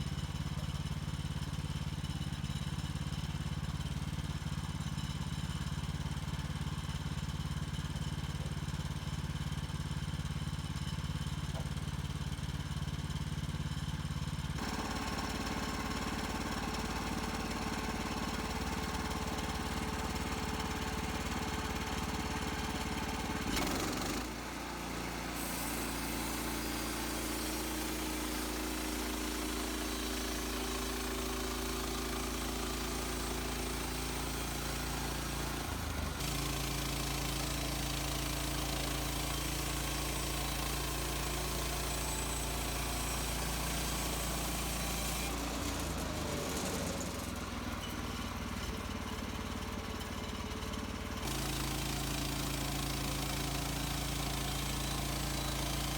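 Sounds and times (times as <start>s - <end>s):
bandsaw mill gas engine running: 0.0s - 55.9s.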